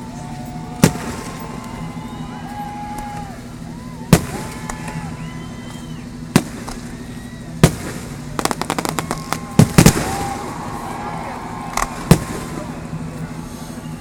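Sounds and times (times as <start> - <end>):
firework bangs: 0.5 - 14.0
firework crackling pops: 0.7 - 1.8, 4.1 - 13.2.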